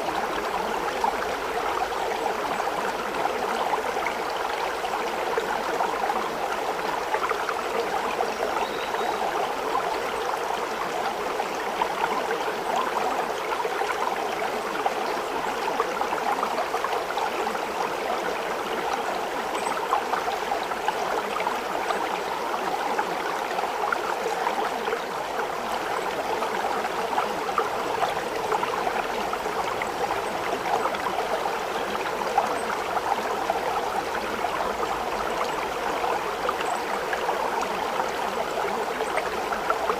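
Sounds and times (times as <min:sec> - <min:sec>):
stream running: 0:00.0 - 0:39.9.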